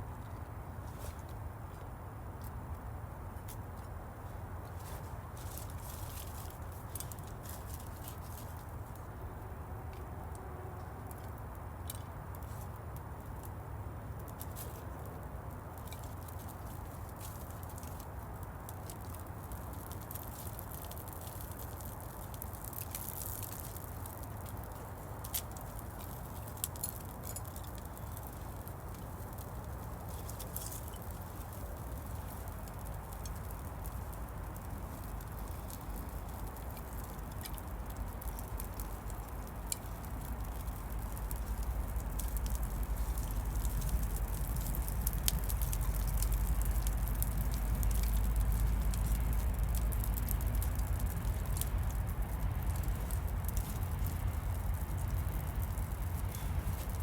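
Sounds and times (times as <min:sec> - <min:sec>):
rain pattering in woodland: 0:00.0 - 0:57.0
sharp drip ticks: 0:15.8 - 0:57.0.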